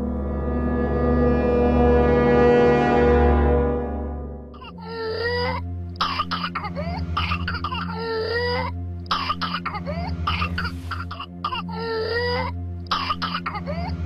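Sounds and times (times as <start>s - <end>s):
rapid coughing: 4.6s - 14.0s.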